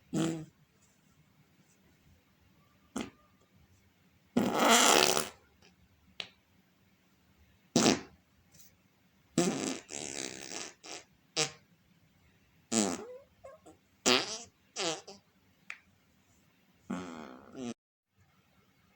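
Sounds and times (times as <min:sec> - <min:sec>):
fart sounds: 0:00.1 - 0:00.5, 0:03.0 - 0:03.2, 0:04.4 - 0:05.4, 0:07.8 - 0:08.2, 0:09.4 - 0:11.6, 0:12.7 - 0:15.2, 0:16.9 - 0:17.8.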